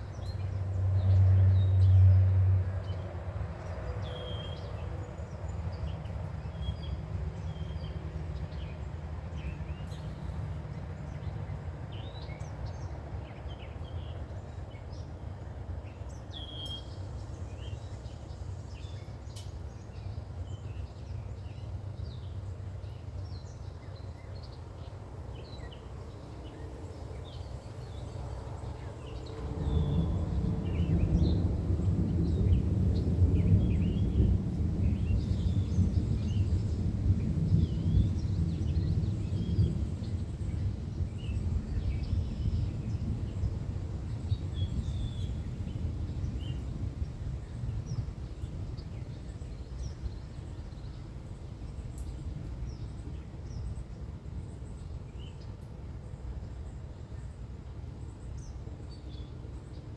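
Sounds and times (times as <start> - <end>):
songbirds chirping: 0.0 - 59.9
thunder rumbling: 29.5 - 43.8.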